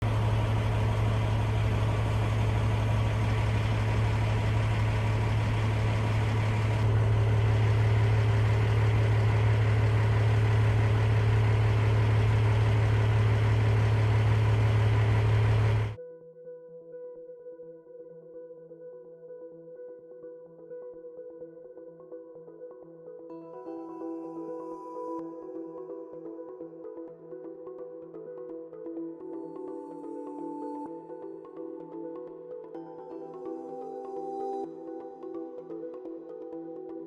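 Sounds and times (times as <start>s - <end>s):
helicopter engine and rotor drone: 0.0s - 16.0s.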